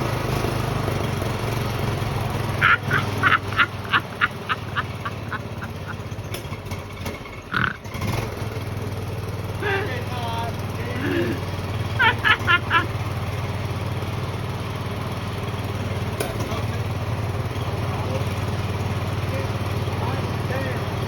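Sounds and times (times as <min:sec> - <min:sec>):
small engine running: 0:00.0 - 0:21.0
duck quacking: 0:02.6 - 0:05.9, 0:07.5 - 0:07.8.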